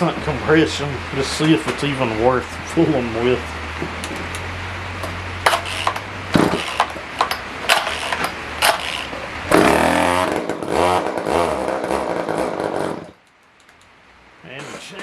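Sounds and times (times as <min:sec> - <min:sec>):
chainsaw engine running unevenly: 0:05.4 - 0:13.1
starter rope pulls: 0:05.4 - 0:13.1.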